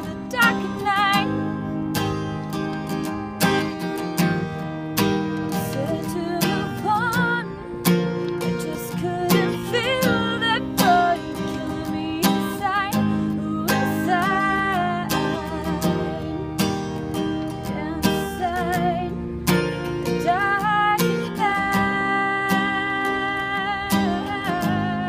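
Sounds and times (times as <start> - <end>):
woman singing: 0.0 - 2.3, 5.5 - 25.0
strummed acoustic guitar: 0.0 - 25.0.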